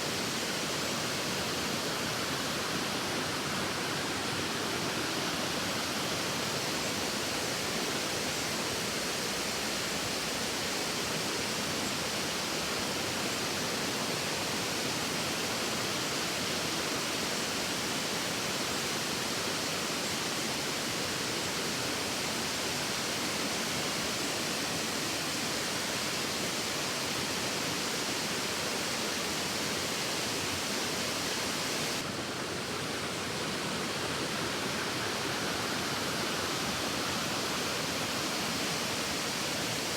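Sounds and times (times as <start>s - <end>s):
waterfall rushing: 22.0s - 39.9s.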